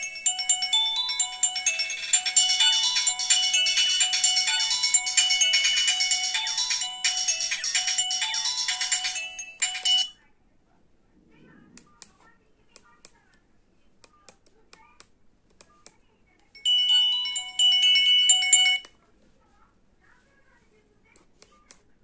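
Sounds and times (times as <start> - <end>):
electronic ringtone melody: 0.0 - 10.2, 16.6 - 18.9.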